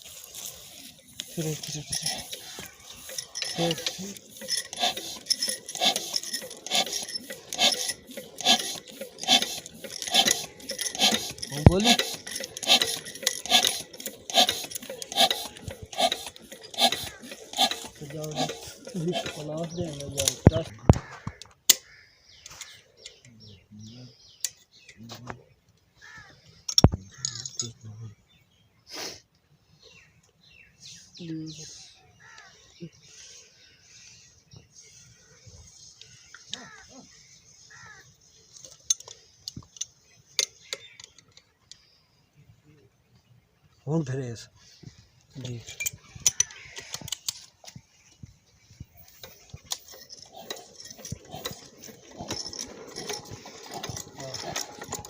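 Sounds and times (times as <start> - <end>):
metal parts clinking: 0.0 - 20.6, 26.6 - 27.8, 45.6 - 47.6, 49.0 - 55.0
rhythmic rasping strokes: 0.0 - 20.7, 48.8 - 55.0.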